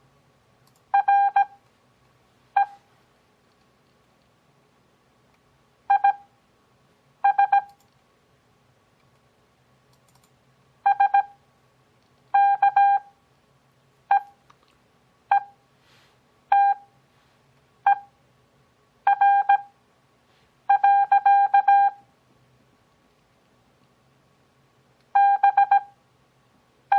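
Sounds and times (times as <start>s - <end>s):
morse code beeps: 1.0s - 1.6s, 2.6s - 2.9s, 5.9s - 6.3s, 7.2s - 7.8s, 10.9s - 11.4s, 12.4s - 13.1s, 15.3s - 15.6s, 16.5s - 16.9s, 17.9s - 18.1s, 19.1s - 19.7s, 20.7s - 22.0s, 25.2s - 26.0s.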